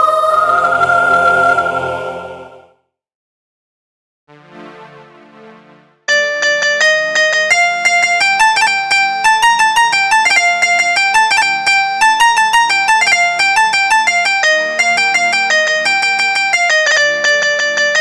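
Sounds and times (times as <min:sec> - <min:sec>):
held synthesizer drone chord: 0:00.0 - 0:02.7, 0:04.3 - 0:08.4
plucked synthesizer melody: 0:04.3 - 0:18.0.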